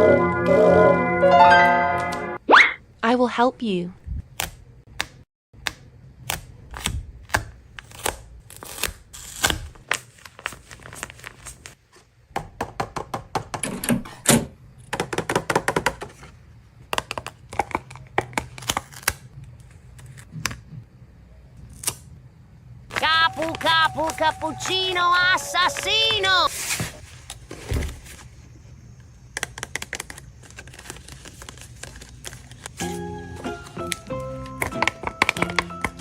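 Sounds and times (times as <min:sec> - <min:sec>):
paper crinkling: 0:09.8 - 0:11.8, 0:29.4 - 0:35.6.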